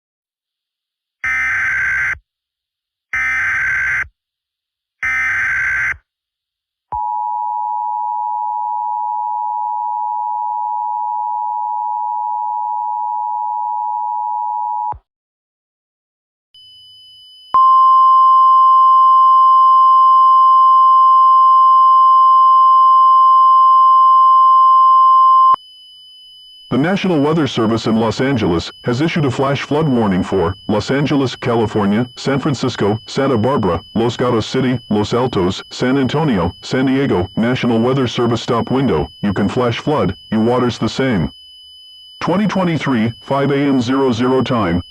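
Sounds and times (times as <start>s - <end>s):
steady warning alarm tone: 1.2s - 2.2s, 3.2s - 4.1s, 5.0s - 6.0s, 16.6s - 44.9s
screechy data bursts: 25.6s - 44.9s
two-tone attention signal: 26.7s - 41.3s, 42.2s - 44.9s.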